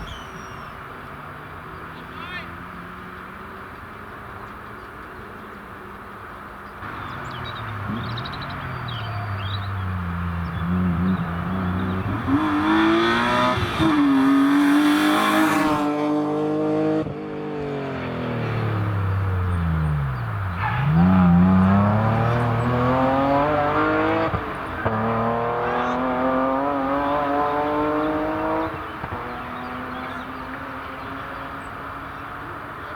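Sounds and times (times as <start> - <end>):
rally car engine revving: 6.8 - 32.7.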